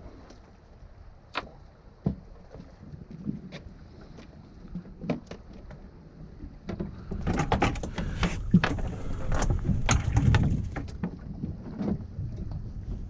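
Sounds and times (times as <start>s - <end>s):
knocking and clattering on boat: 1.4s - 3.6s, 6.5s - 13.0s
low rumble: 6.9s - 11.2s.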